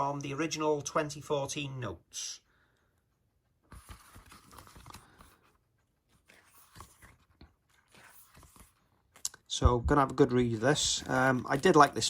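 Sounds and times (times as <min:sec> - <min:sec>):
paper pages rustling and turning: 0:03.6 - 0:12.0.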